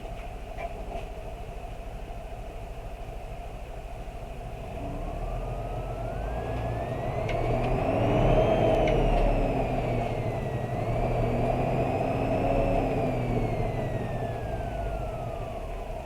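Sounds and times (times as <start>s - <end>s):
bus diesel engine running: 0.0s - 16.0s
thin rising whine: 4.8s - 16.0s.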